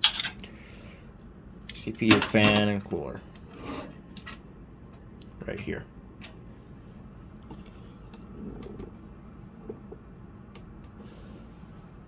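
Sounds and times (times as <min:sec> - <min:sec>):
low room hum: 0:00.0 - 0:12.0.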